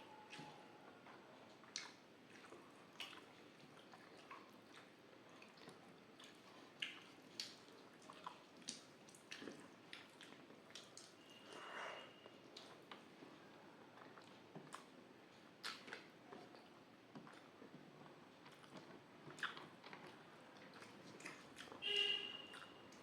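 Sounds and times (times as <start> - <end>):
wet chewing and mouth smacks: 0.3 - 11.2, 12.5 - 13.3, 14.0 - 21.8, 22.4 - 23.0.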